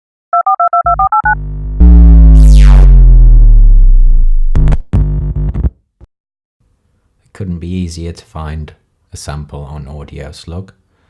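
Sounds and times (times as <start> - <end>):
short synth stabs: 1.4 - 4.8
deep synth bass note: 1.4 - 5.4
falling synth sweep: 1.8 - 4.5.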